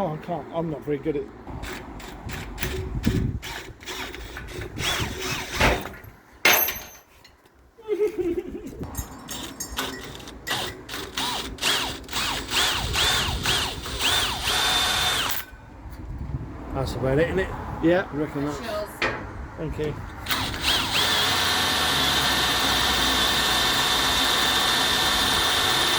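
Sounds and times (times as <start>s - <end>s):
cordless drill whirring: 2.4s - 5.6s, 10.1s - 15.5s, 20.2s - 25.9s
tools clicking and rattling: 8.8s - 12.5s.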